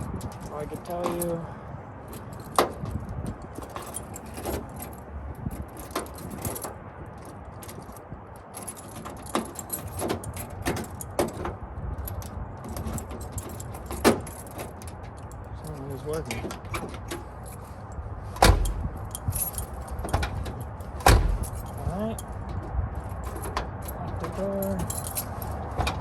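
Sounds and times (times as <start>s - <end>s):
keys jangling: 0.0s - 26.0s
lock and door latch clicking: 18.4s - 26.0s.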